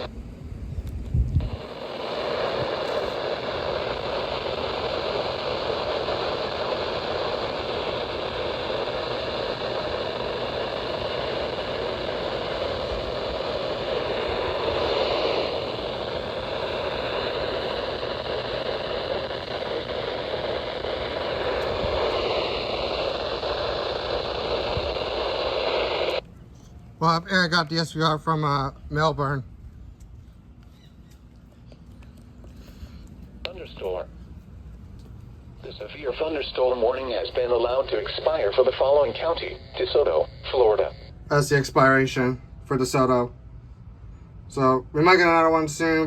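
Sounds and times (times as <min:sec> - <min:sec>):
radio static hiss: 0:01.4 - 0:26.2, 0:33.3 - 0:34.3, 0:35.4 - 0:43.3.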